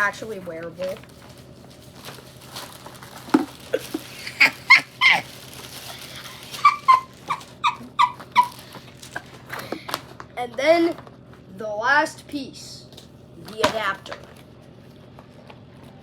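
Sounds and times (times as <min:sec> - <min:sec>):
dog whining: 0:04.4 - 0:05.4, 0:06.3 - 0:08.8
dog yipping: 0:04.4 - 0:05.4, 0:06.5 - 0:08.6.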